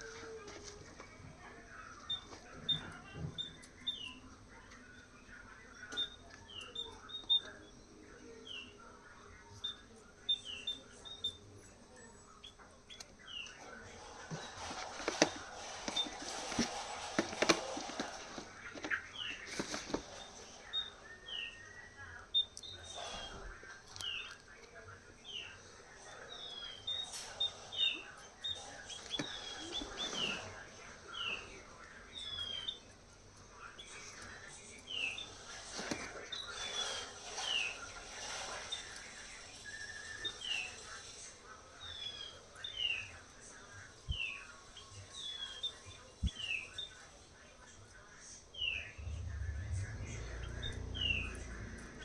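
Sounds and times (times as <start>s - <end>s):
bird chirping: 0.0s - 41.0s, 48.5s - 52.0s
clicks and taps handling box: 14.3s - 20.0s.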